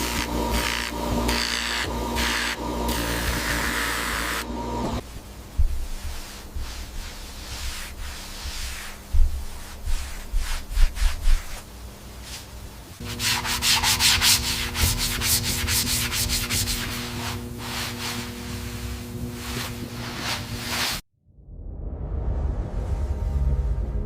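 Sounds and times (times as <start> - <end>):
sanding rubbing strokes: 6.0 - 11.7, 13.0 - 21.0.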